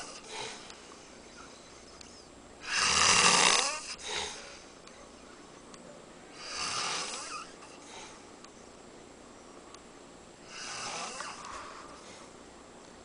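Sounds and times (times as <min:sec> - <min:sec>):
man snoring: 0:02.6 - 0:04.4, 0:06.4 - 0:07.6, 0:10.5 - 0:12.0.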